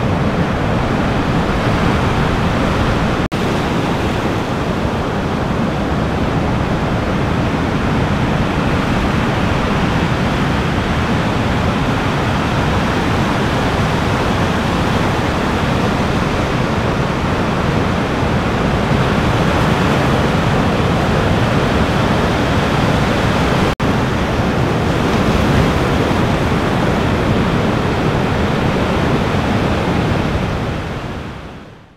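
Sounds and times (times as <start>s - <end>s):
ocean surf rushing: 0.0s - 31.9s.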